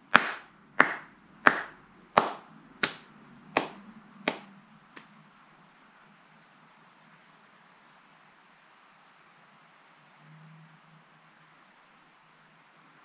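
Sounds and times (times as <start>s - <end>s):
hand claps: 0.2s - 3.0s, 3.6s - 5.1s.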